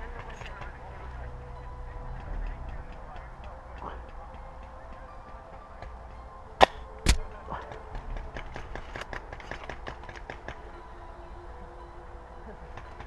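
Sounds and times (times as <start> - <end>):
rapid clicks of airsoft fire: 7.1 - 7.3
sharp airsoft gun shots: 7.1 - 7.3.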